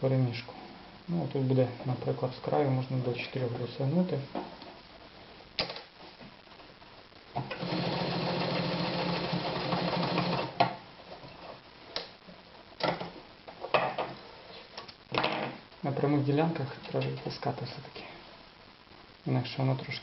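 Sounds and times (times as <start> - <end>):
sewing machine stitching: 7.4 - 10.6.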